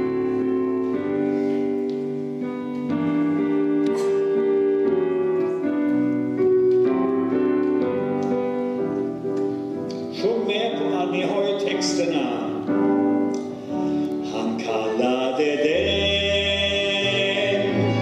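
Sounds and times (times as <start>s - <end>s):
piano chords: 0.0s - 18.0s.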